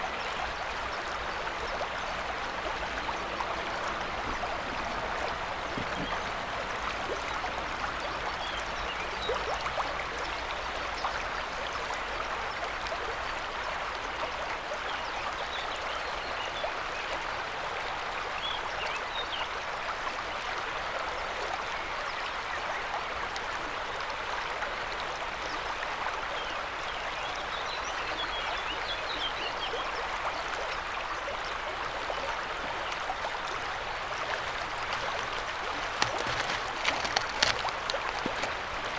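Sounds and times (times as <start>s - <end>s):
river water rushing: 0.0s - 12.7s, 31.4s - 38.9s.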